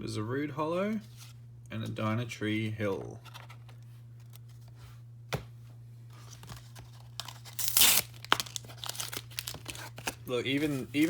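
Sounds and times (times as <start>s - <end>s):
steady low hum: 0.0s - 11.0s
packet handling: 6.2s - 11.0s
packaging being torn open: 6.4s - 11.0s.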